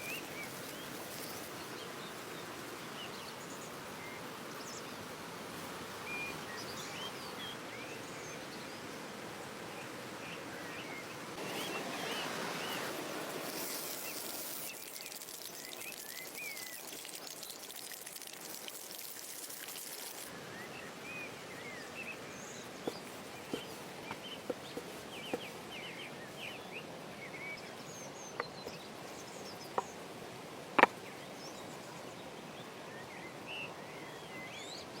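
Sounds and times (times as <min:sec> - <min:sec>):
steady background hiss: 0:00.0 - 0:35.0
birds chirping: 0:10.3 - 0:30.0.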